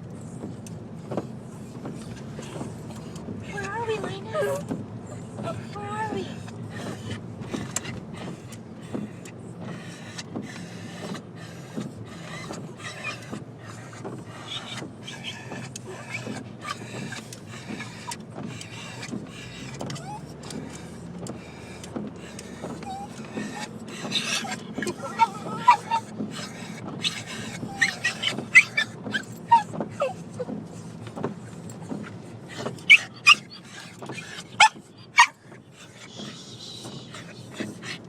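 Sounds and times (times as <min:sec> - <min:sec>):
road and engine rumble: 0:00.0 - 0:38.0
dogs whining and squealing: 0:01.5 - 0:38.0.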